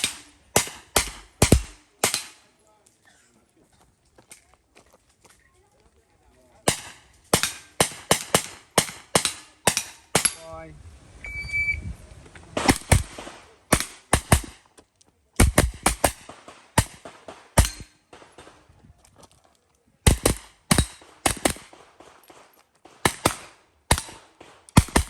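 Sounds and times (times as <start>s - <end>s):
gunshots: 0.0s - 2.5s, 6.6s - 10.5s, 12.6s - 14.6s, 15.4s - 18.7s, 20.0s - 25.0s.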